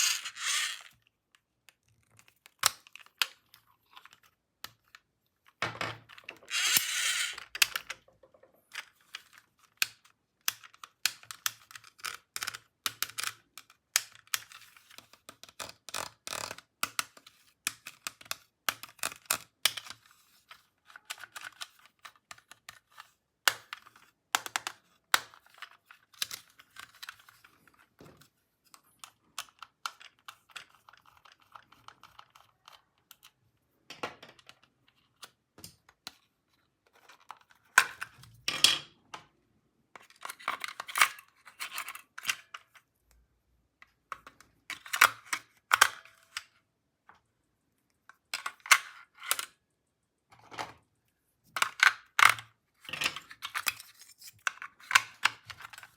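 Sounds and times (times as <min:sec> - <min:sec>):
plastic toy pieces clicking: 0:00.0 - 0:00.9, 0:06.5 - 0:08.0, 0:09.2 - 0:14.5.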